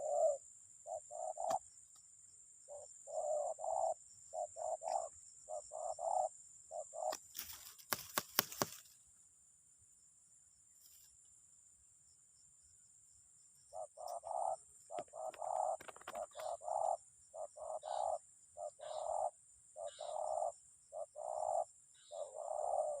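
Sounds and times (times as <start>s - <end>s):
bird hoarse cooing: 0.0s - 1.6s, 2.7s - 7.3s, 13.7s - 23.0s.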